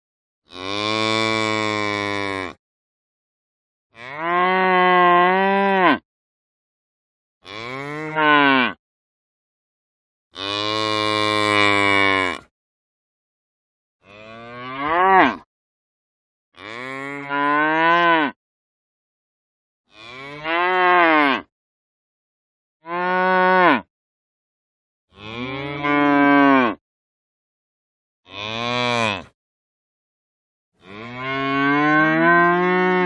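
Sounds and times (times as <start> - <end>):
cow mooing: 0.5 - 2.6, 4.0 - 6.0, 7.4 - 8.8, 10.4 - 12.5, 14.0 - 15.4, 16.6 - 18.4, 19.9 - 21.5, 22.8 - 23.8, 25.1 - 26.8, 28.3 - 29.3, 30.8 - 33.0.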